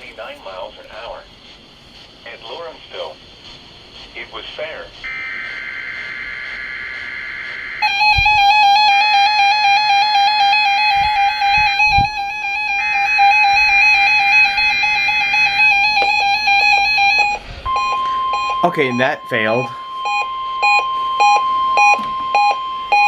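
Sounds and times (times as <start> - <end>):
warbling electronic alarm tone: 5.0 - 23.0.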